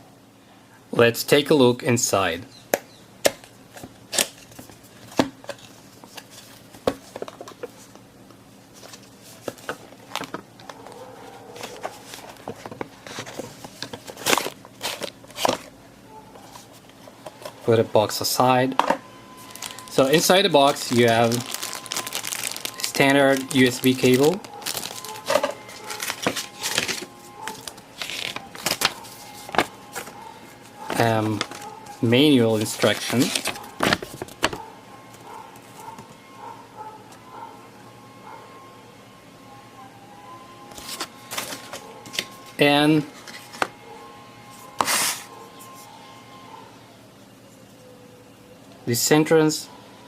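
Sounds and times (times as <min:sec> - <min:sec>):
faint steady hum: 0:00.0 - 0:50.0
packaging rustling: 0:08.7 - 0:15.8, 0:19.3 - 0:36.0, 0:40.7 - 0:42.5.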